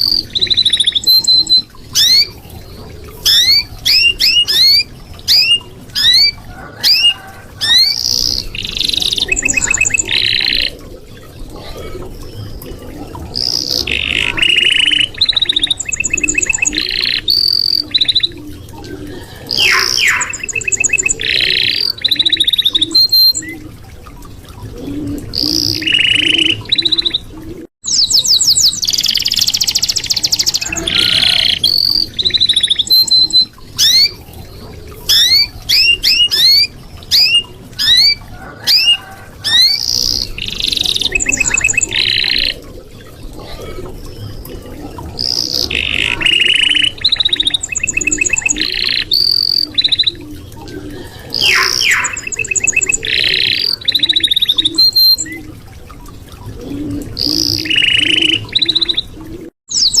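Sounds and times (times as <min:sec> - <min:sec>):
canary singing: 0:19.6 - 0:22.4.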